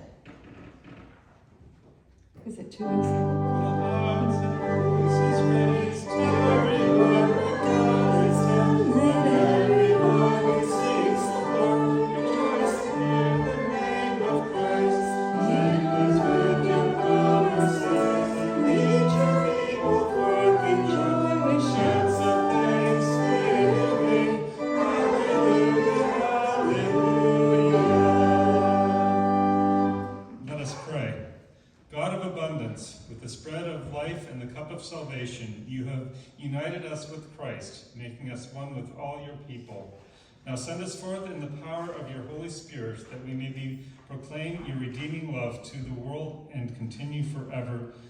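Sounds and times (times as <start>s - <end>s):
pipe organ chords: 2.8s - 30.6s
group singing a hymn: 2.9s - 30.3s.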